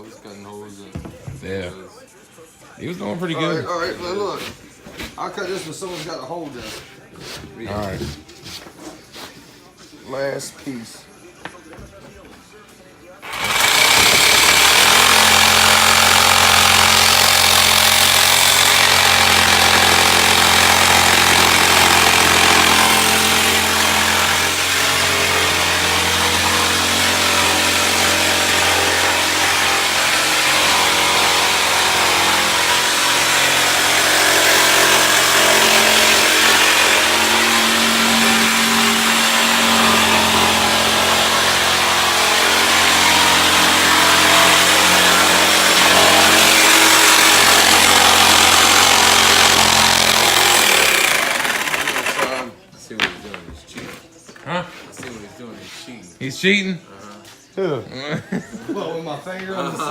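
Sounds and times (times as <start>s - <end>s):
electric jigsaw cutting wood: 13.2s - 52.5s.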